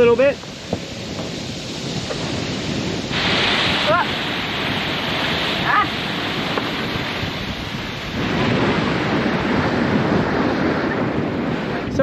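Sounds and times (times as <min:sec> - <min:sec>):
water rushing along hull: 0:00.0 - 0:12.0
wind buffeting microphone: 0:00.0 - 0:12.0.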